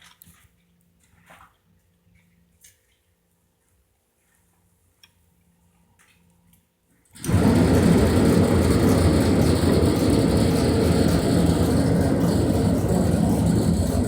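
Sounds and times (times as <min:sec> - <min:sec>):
furnace burner roaring: 0:07.2 - 0:14.0.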